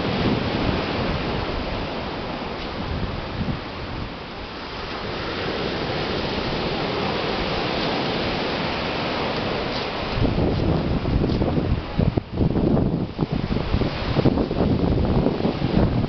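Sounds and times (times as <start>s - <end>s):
waves breaking on a beach: 0.0s - 16.0s
wind buffeting microphone: 0.0s - 16.0s.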